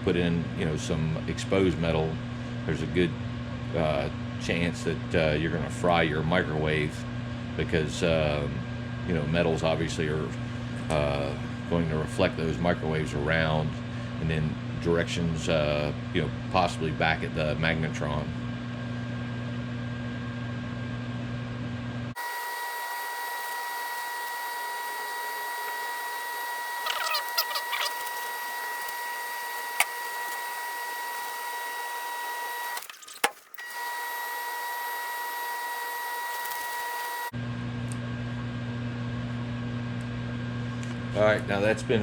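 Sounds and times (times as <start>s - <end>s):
microwave oven hum: 0.0s - 42.0s
high-pitched whine: 22.2s - 33.2s.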